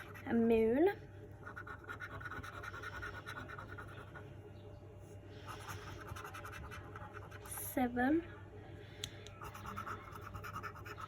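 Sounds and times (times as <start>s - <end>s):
scratching a scratch card: 0.0s - 0.3s, 1.4s - 4.3s, 5.5s - 7.6s, 9.4s - 11.0s.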